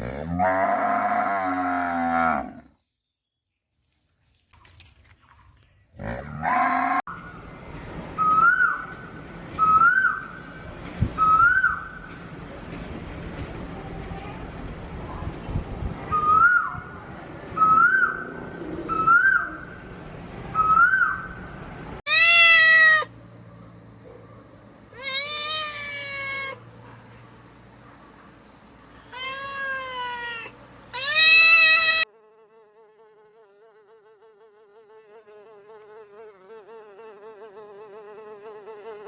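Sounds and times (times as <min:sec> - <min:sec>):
cat meowing: 0:22.1 - 0:23.1, 0:24.9 - 0:26.6, 0:29.0 - 0:32.0.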